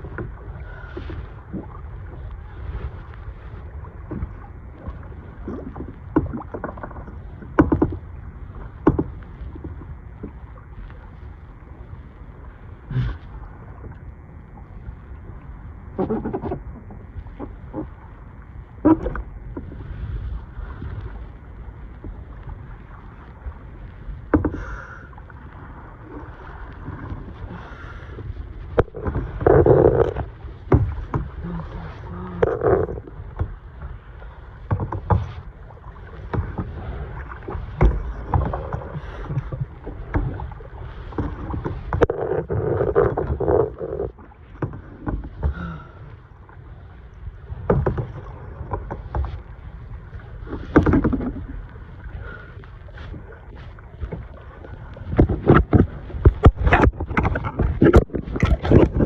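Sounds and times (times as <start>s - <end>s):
paddle splashing water: 0.0s - 59.0s
paddle knocking on hull: 4.0s - 10.4s, 24.3s - 25.0s, 28.7s - 33.9s, 34.6s - 45.9s, 47.5s - 49.5s, 50.4s - 51.6s, 55.0s - 59.0s.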